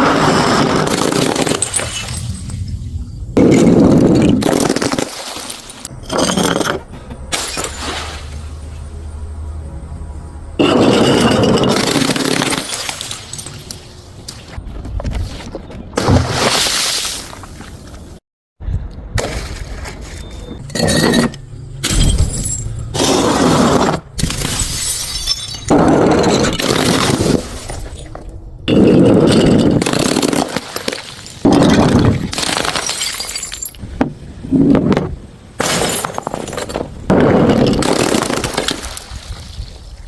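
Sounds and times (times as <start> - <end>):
glass bottles smashing: 0.1 - 2.8, 3.4 - 8.8, 10.6 - 14.0, 20.6 - 33.8, 35.6 - 39.7
glass shards tinkling: 1.3 - 2.7, 5.4 - 8.9, 10.6 - 13.9, 20.6 - 28.1, 28.7 - 33.8.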